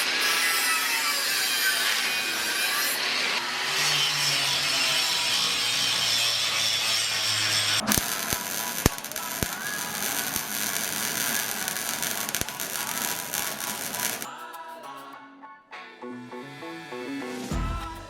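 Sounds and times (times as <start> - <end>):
angle grinder grinding steel: 0.0 - 14.3.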